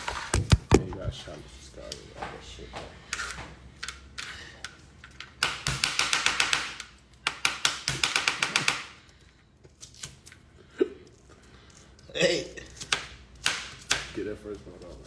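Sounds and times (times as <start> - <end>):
knife chopping on cutting board: 0.4 - 1.1.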